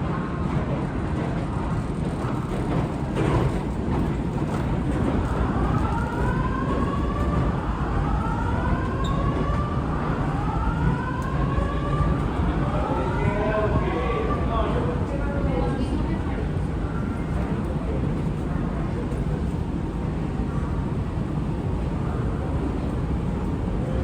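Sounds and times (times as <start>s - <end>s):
siren rising sweeps: 5.7s - 14.4s.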